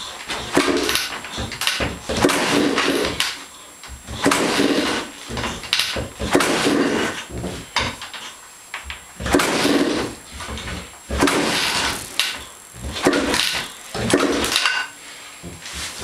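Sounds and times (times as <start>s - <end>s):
dirt bike kick-start clatter: 4.1s - 7.2s, 9.2s - 14.8s.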